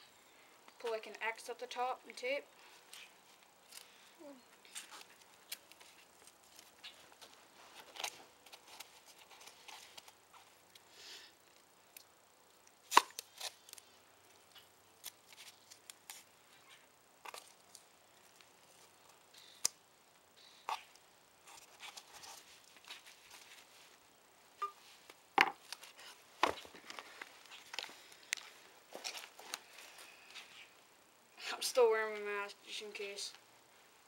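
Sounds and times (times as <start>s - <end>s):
tape snapping: 12.9s - 13.5s.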